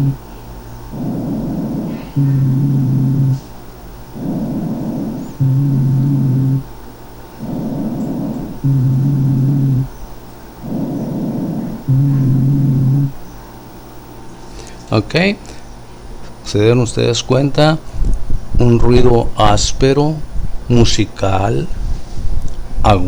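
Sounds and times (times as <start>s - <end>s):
breathing with rhonchi: 0.0s - 10.0s, 10.6s - 13.2s, 14.4s - 15.7s, 21.7s - 22.5s.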